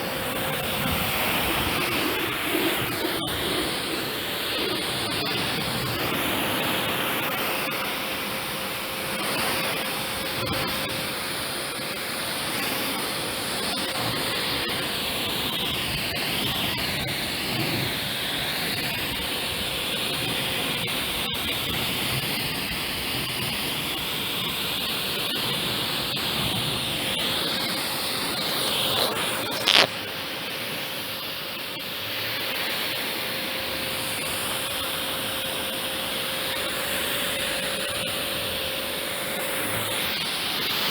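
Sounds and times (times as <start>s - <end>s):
pressure washer spraying water: 0.0s - 21.2s, 32.2s - 40.9s.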